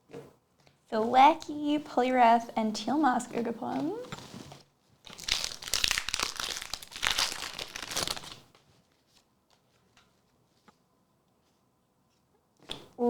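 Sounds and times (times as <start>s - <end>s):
foil wrapper crinkling and tearing: 4.2s - 8.6s.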